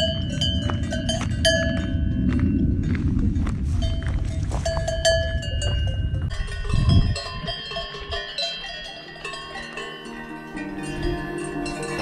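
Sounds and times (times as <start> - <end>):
cowbells clanking: 0.0 - 2.3, 3.7 - 12.0
low rumble: 0.0 - 7.6.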